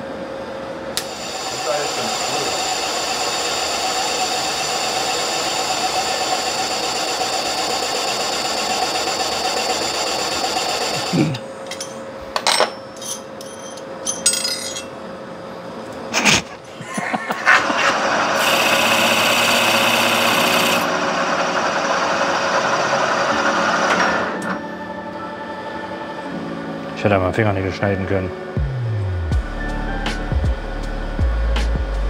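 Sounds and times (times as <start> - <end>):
metal lathe whirring: 1.0 - 11.4, 17.8 - 24.6.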